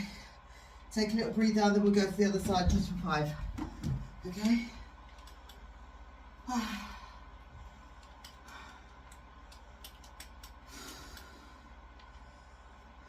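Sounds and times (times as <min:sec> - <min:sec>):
woman sighing: 0:06.4 - 0:07.2.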